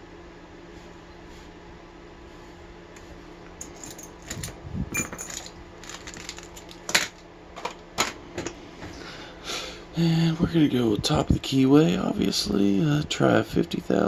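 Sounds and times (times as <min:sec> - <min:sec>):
small metal objects clinking: 0:03.6 - 0:07.2.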